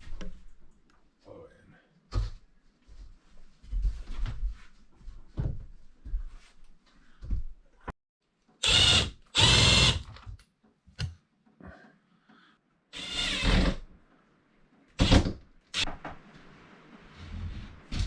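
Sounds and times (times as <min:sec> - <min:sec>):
power drill bursts: 0:08.6 - 0:10.1, 0:13.0 - 0:13.8.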